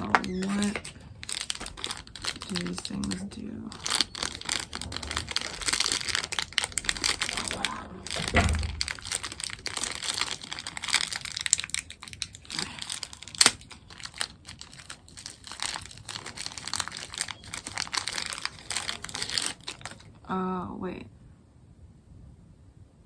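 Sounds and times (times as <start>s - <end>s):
plastic packaging crinkling: 0.0s - 20.3s.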